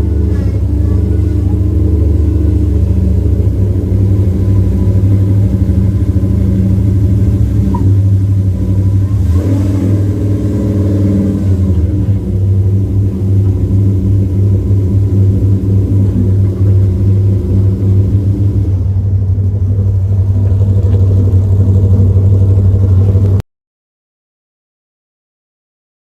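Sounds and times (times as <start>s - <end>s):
vehicle engine rumbling: 0.0s - 23.4s.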